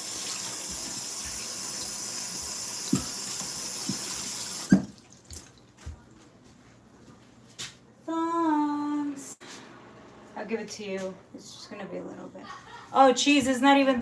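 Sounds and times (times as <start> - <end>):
tap water running into sink: 0.0 - 5.5.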